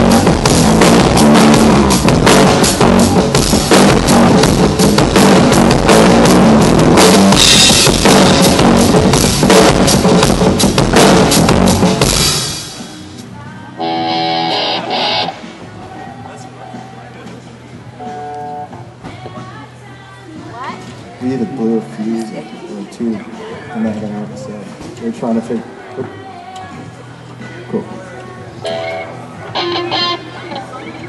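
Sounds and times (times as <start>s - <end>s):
rock drum kit played hard: 0.0s - 13.1s, 13.8s - 15.8s.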